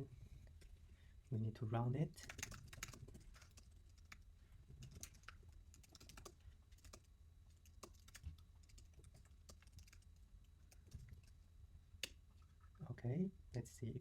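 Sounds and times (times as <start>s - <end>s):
low steady hum: 0.0s - 14.0s
faint keyboard typing: 2.1s - 11.4s.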